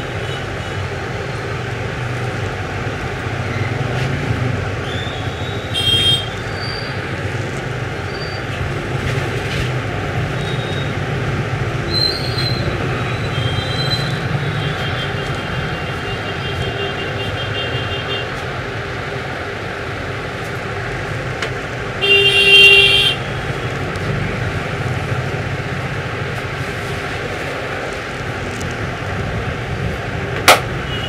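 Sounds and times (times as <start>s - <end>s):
street traffic noise: 0.0s - 31.0s
loud vehicle horn: 5.7s - 6.4s, 14.5s - 18.3s, 22.0s - 23.5s.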